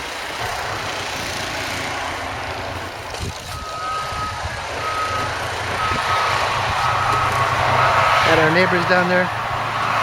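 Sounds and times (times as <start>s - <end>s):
heavy machine running: 0.0s - 10.0s
reversing alarm beeps: 3.5s - 8.4s.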